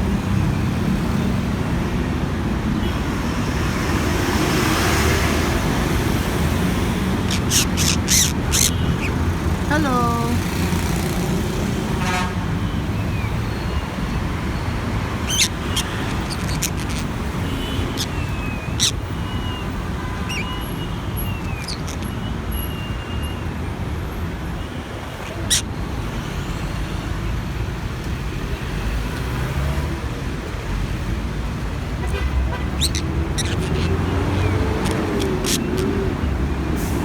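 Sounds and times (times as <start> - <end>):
road traffic rumble: 0.0 - 37.0
parrot calls: 6.6 - 10.4, 15.2 - 19.6, 20.3 - 20.6, 21.3 - 22.2, 25.2 - 25.7, 32.7 - 36.2
faint bird chirps: 7.2 - 9.2.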